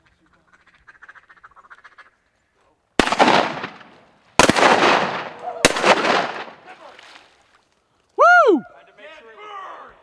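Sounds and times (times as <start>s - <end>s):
echoing shotgun blasts: 3.0s - 6.8s.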